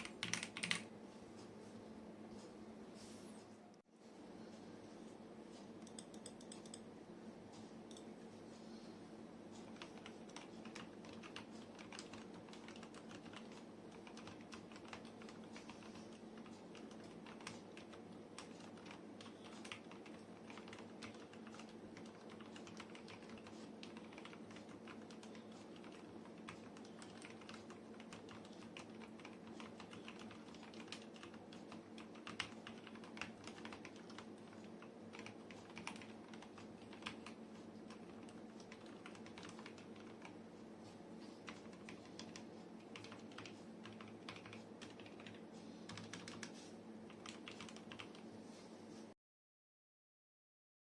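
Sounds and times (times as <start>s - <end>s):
mechanical keyboard typing: 0.0s - 0.9s, 5.8s - 6.8s, 9.6s - 40.4s, 41.4s - 48.3s.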